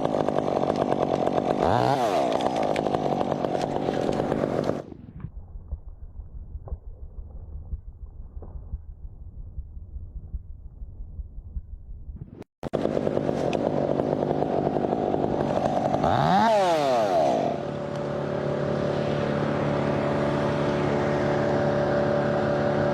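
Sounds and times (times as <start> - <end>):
chainsaw engine revving and idling: 0.0 - 4.9, 12.7 - 22.9.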